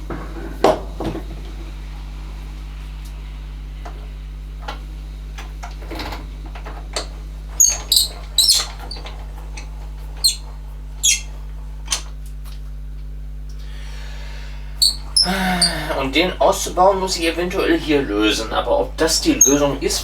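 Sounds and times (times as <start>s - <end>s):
high squeaks: 7.0s - 12.0s, 14.8s - 16.2s, 19.2s - 20.0s.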